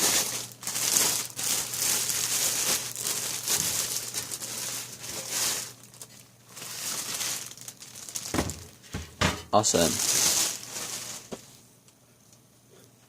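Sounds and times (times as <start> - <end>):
plastic wrapping crinkling: 0.0 - 8.9, 9.7 - 11.6.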